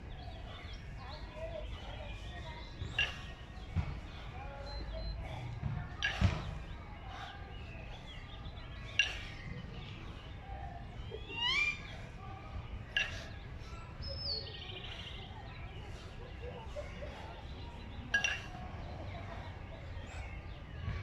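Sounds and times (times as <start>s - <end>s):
kettlebells clanking metal on metal: 2.8s - 3.4s, 5.9s - 7.3s, 8.8s - 9.4s, 12.8s - 13.8s, 18.1s - 18.9s.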